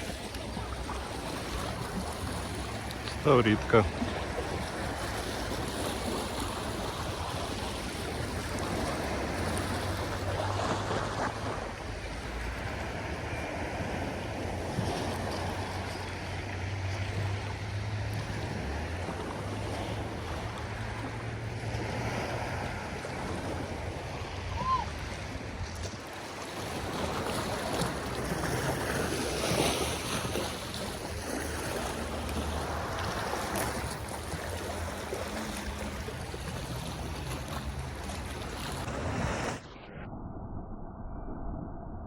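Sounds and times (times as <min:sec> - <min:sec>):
sea waves washing: 0:00.0 - 0:39.9
low rumble: 0:38.8 - 0:42.0.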